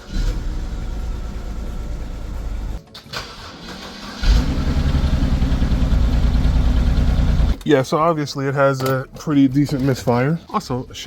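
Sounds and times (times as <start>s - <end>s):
car engine misfiring: 0.0s - 7.6s.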